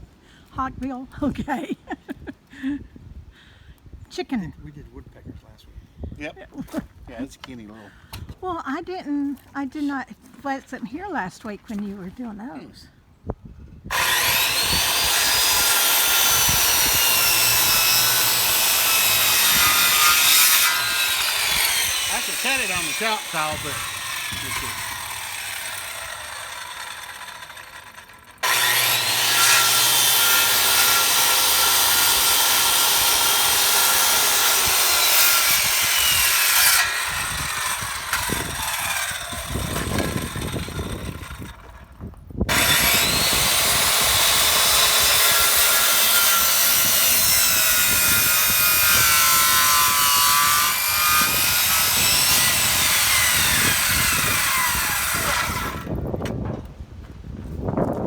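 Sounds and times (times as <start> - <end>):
circular saw cutting wood: 13.9 - 41.9, 42.5 - 56.0.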